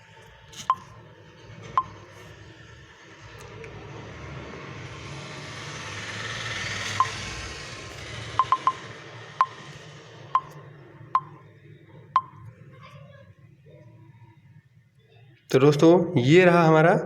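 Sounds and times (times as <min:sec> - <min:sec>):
rushing noise: 0:00.0 - 0:12.5
phone touch beeps: 0:00.6 - 0:01.0, 0:08.4 - 0:08.8, 0:10.4 - 0:10.6, 0:11.2 - 0:11.4, 0:12.2 - 0:12.4.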